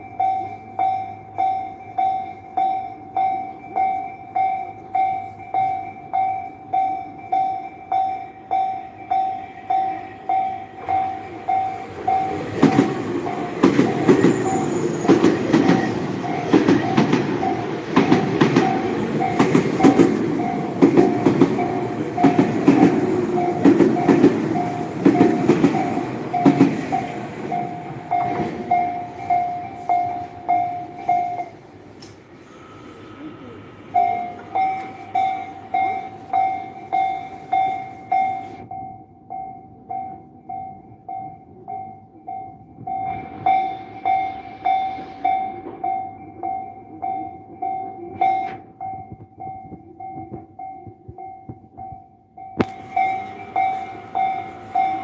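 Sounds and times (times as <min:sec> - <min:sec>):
railroad crossing bell ringing: 0:00.0 - 0:55.0
train rumbling past: 0:00.0 - 0:55.0
train wheels clacking on rail joints: 0:10.8 - 0:32.2, 0:48.1 - 0:55.0.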